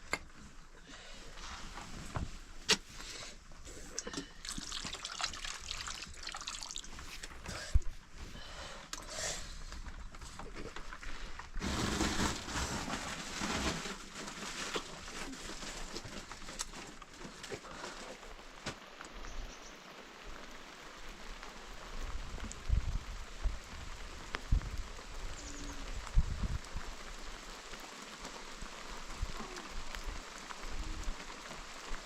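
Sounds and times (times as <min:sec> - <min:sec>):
rain falling: 0:00.0 - 0:32.0.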